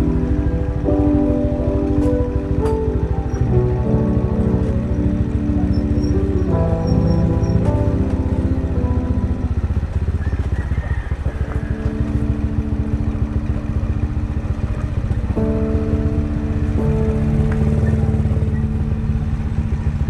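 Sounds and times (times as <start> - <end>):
background music: 0.0 - 10.3, 11.1 - 20.0
motorcycle engine running: 0.0 - 20.0.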